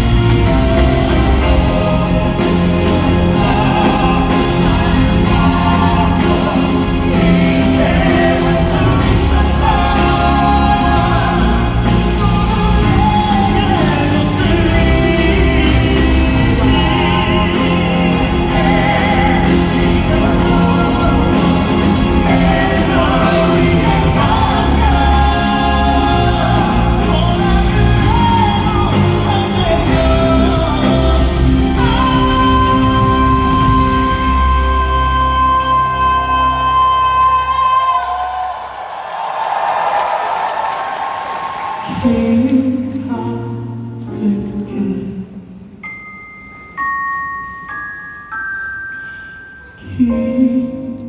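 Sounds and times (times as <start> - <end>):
live band playing a ballad: 0.0 - 37.8
person singing: 0.0 - 38.6, 49.0 - 51.0
crowd shouting: 38.0 - 42.2.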